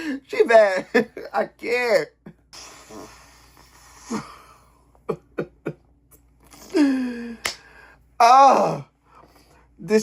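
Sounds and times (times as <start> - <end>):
man moaning mmm: 8.2 - 8.9.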